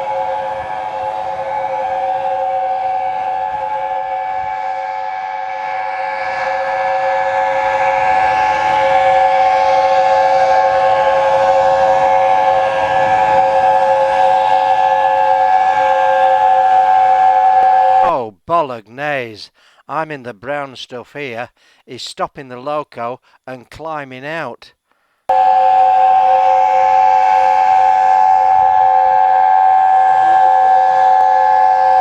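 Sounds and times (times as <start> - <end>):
steam locomotive chime whistle: 0.0 - 18.2, 25.3 - 32.0.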